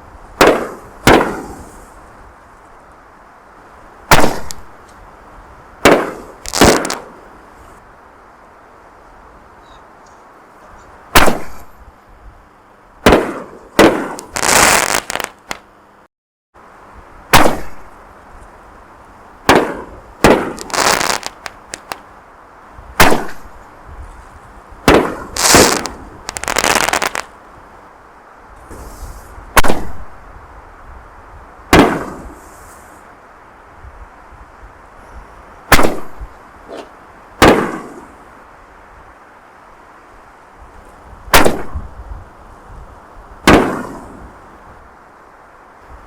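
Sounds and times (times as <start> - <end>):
hissing crackle of firework bursts: 0.0 - 7.8, 10.1 - 11.9, 13.0 - 15.7, 17.2 - 40.1, 40.7 - 46.0
firework shells booming: 0.4 - 1.8, 4.1 - 4.7, 5.8 - 7.2, 11.1 - 11.7, 13.0 - 15.6, 17.3 - 17.9, 19.4 - 22.0, 23.0 - 23.6, 24.8 - 27.3, 29.6 - 30.1, 31.7 - 32.4, 35.7 - 38.2, 41.3 - 41.9, 43.4 - 44.3.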